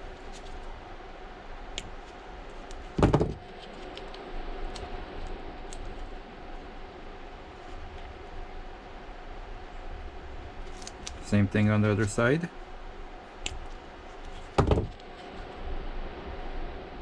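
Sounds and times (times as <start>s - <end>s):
faint steady hum: 0.0s - 17.0s
brief thump: 3.0s - 3.4s, 14.6s - 15.0s.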